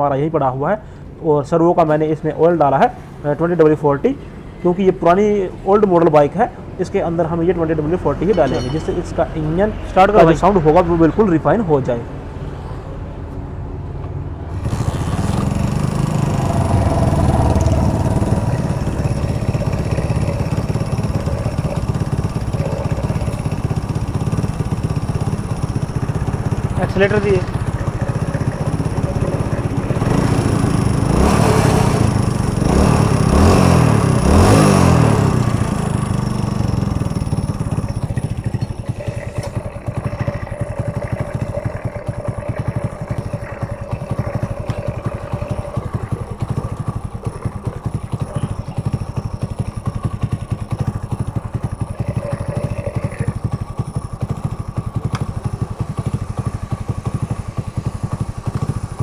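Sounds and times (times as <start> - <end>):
motorcycle engine revving and idling: 14.5 - 59.0.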